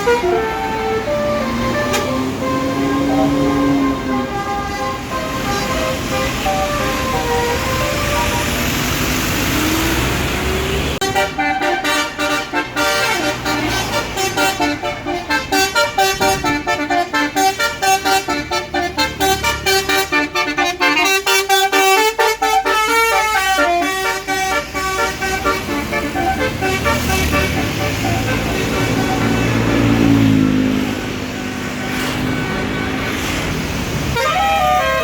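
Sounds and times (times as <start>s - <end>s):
multi-trumpet air horn melody: 0.0s - 8.7s, 11.0s - 30.4s, 31.3s - 35.0s
vehicle engine rising in pitch: 0.0s - 11.2s, 24.2s - 35.0s.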